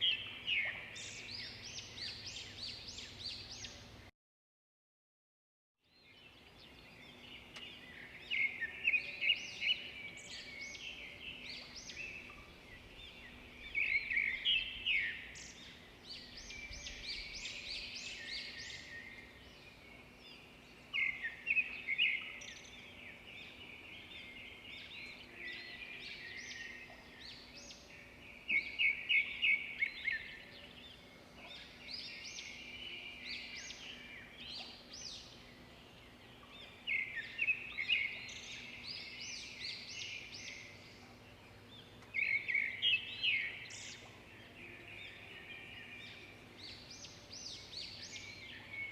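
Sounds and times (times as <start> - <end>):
songbirds chirping and singing: 0.0 - 4.1, 5.8 - 48.9.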